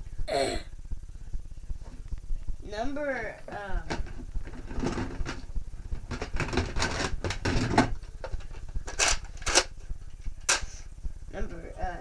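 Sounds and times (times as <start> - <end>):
plastic toy clicks and knocks: 6.1 - 9.7.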